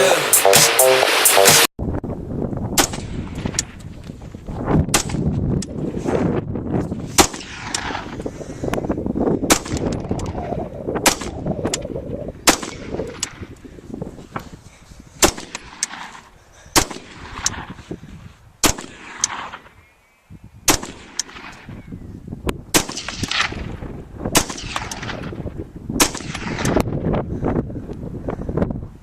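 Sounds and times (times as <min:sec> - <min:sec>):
rifle shots with rolling echo: 0:07.2 - 0:08.1, 0:15.2 - 0:17.6, 0:18.6 - 0:19.8, 0:20.7 - 0:21.7, 0:22.7 - 0:25.4, 0:26.0 - 0:26.8.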